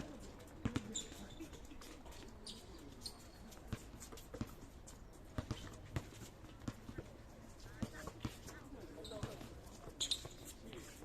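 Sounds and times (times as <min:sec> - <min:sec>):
shoes squeaking on court floor: 0:00.0 - 0:11.0
basketball bouncing: 0:00.6 - 0:01.2, 0:05.3 - 0:07.0, 0:09.0 - 0:09.5.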